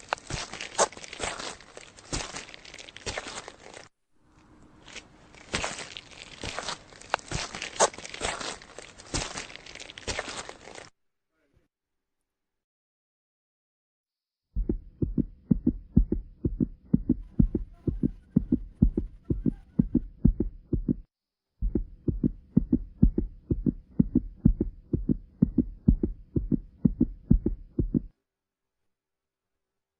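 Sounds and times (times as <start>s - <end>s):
fast heartbeat: 14.6s - 28.1s.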